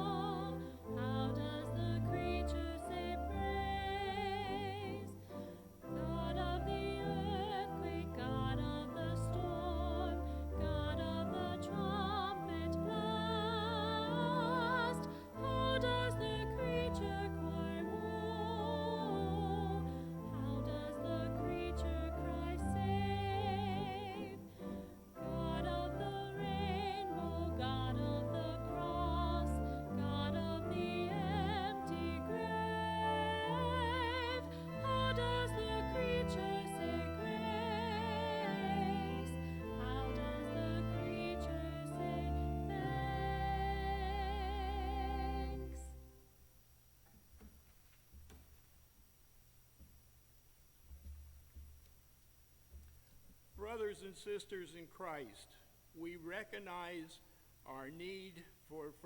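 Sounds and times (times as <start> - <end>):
instrumental accompaniment: 0.0 - 46.2
classical hymn singing with vibrato: 0.0 - 46.5, 53.6 - 59.0.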